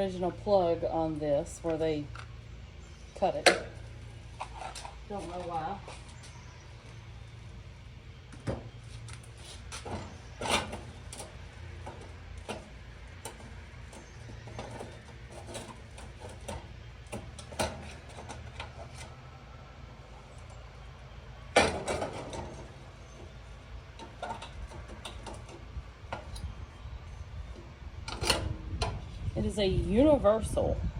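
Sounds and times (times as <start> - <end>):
steady low hum: 0.0 - 30.9
metal stove parts clicking and knocking: 9.8 - 19.2, 21.5 - 26.6, 27.4 - 29.1.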